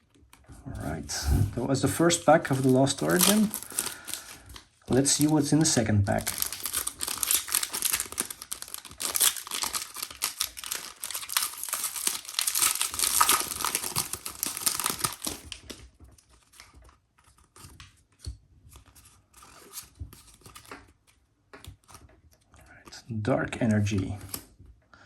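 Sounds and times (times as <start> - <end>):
foil wrapper crinkling and tearing: 2.3 - 17.8
cards ticking as handled: 2.5 - 18.9.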